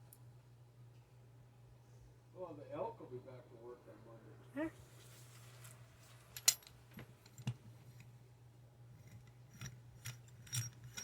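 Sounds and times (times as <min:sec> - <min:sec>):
steady low hum: 0:00.0 - 0:11.0
small metal tools clicking: 0:09.0 - 0:11.0.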